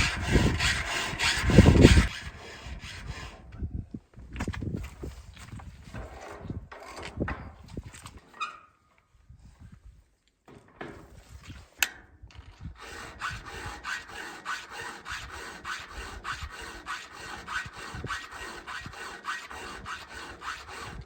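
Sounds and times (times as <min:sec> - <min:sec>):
file rasping on chain: 0:00.0 - 0:03.5, 0:12.8 - 0:21.0.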